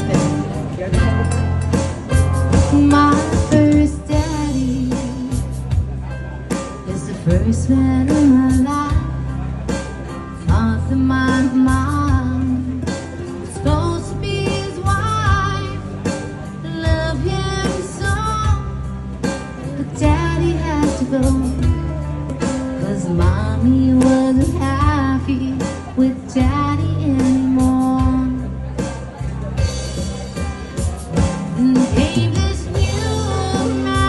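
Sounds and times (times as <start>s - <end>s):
bass line: 0.0s - 34.0s
guitar: 0.0s - 34.0s
woman singing: 2.6s - 5.8s, 6.8s - 9.5s, 10.4s - 19.0s, 19.6s - 28.7s, 31.2s - 34.0s.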